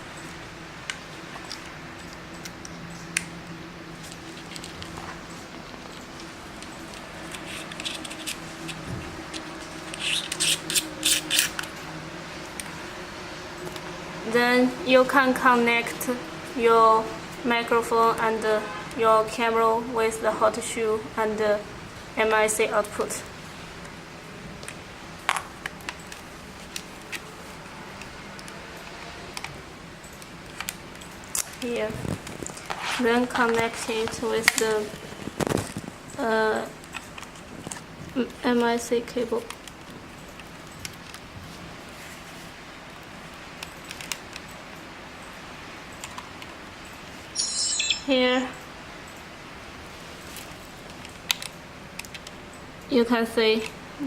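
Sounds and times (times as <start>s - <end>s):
plastic scrapes and clicks: 6.6s - 11.7s.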